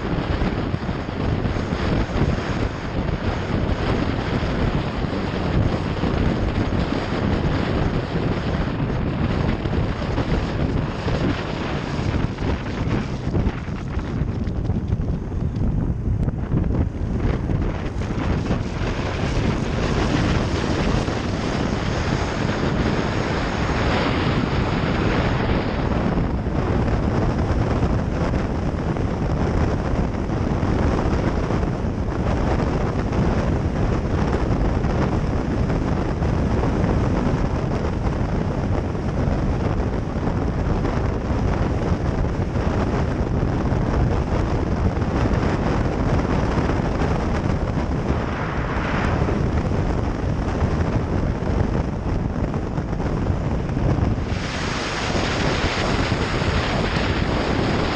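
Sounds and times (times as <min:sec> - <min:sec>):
road noise: 0:00.0 - 0:57.9
wind rushing over microphone: 0:00.0 - 0:57.9
motorcycle engine: 0:00.7 - 0:25.9.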